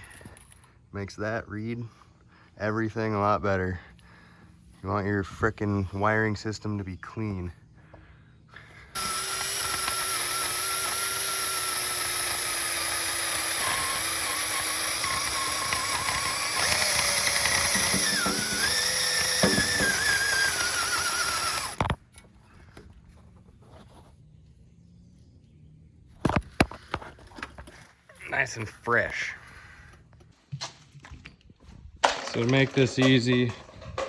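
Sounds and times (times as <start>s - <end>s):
wire wheel grinding metal: 9.0s - 21.8s.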